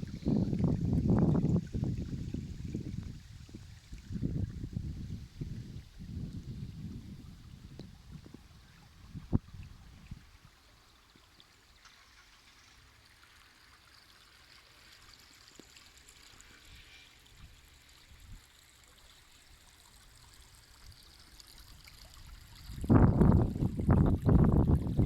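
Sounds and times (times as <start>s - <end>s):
wind rumble on microphone: 0.0s - 10.6s, 21.7s - 25.0s
faint outdoor hiss: 0.0s - 25.0s.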